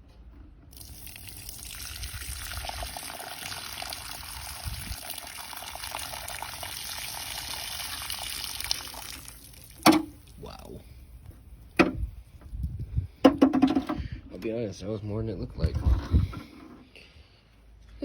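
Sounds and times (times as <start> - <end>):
water pouring from tank: 0.7 - 10.6.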